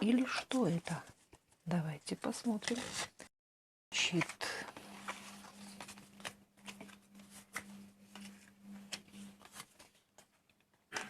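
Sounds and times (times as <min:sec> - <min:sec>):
cards being shuffled: 0:02.5 - 0:03.2, 0:04.1 - 0:11.0.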